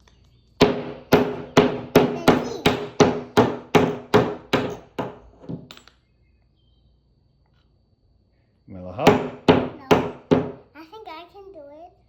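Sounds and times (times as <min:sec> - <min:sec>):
hammer striking nail into wood: 0:00.6 - 0:05.7, 0:09.0 - 0:10.6.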